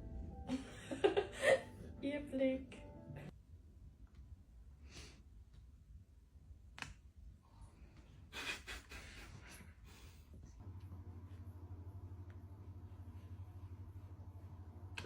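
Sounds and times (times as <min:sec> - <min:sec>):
low hum: 0:00.0 - 0:03.4, 0:09.9 - 0:15.0.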